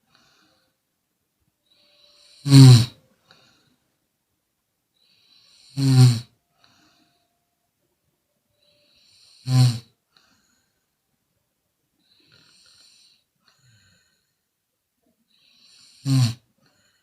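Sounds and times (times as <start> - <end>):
woman snoring: 1.7 - 3.0, 5.0 - 7.0, 8.6 - 10.0, 12.1 - 14.1, 15.3 - 17.0.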